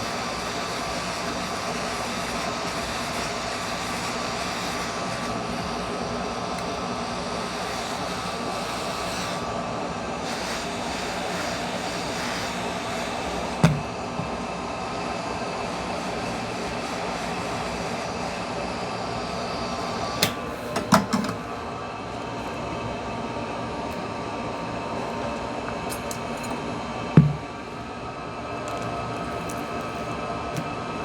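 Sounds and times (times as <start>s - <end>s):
heat gun blowing: 0.0s - 21.2s.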